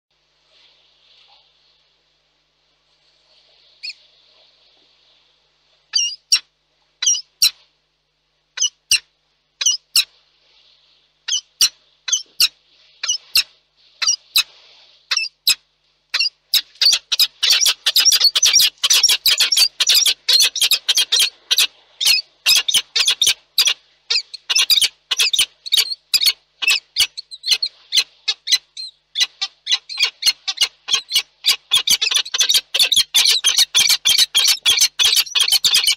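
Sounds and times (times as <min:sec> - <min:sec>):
falcons calling: 0:16.6 - 0:27.6, 0:29.2 - 0:35.9.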